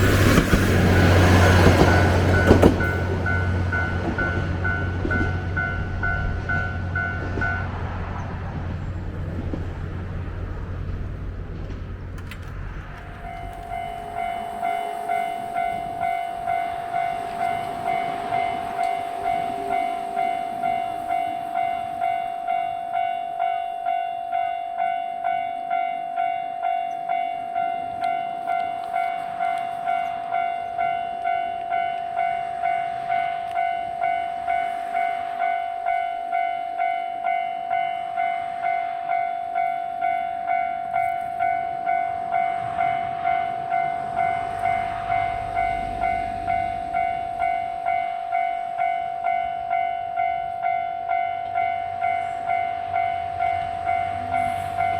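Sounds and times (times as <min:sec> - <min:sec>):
level crossing alarm clanging: 0:00.0 - 0:07.6.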